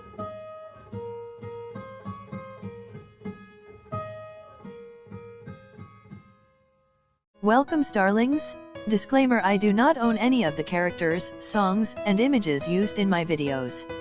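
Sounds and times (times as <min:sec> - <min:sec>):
plucked acoustic guitar melody: 0:00.0 - 0:14.0.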